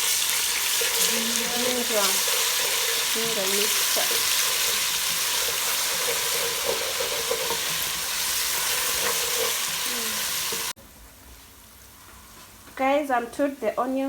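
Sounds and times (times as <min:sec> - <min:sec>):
onions sizzling in hot oil: 0:00.0 - 0:10.8.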